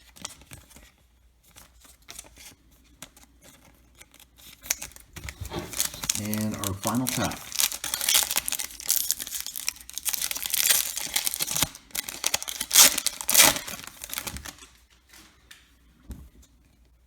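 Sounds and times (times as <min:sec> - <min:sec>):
cards being handled: 0:03.0 - 0:15.0
foil wrapper crinkling and tearing: 0:03.9 - 0:14.9.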